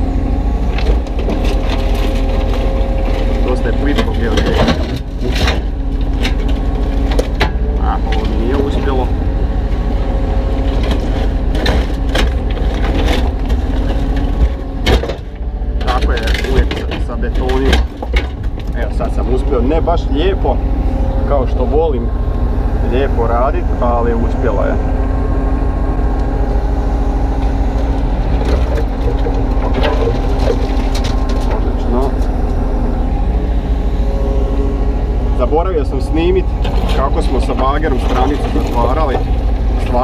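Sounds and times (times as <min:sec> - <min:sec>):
excavator engine running: 0:00.0 - 0:40.0
bucket scraping broken concrete: 0:00.7 - 0:09.2, 0:10.4 - 0:19.8, 0:27.7 - 0:32.4, 0:36.6 - 0:40.0.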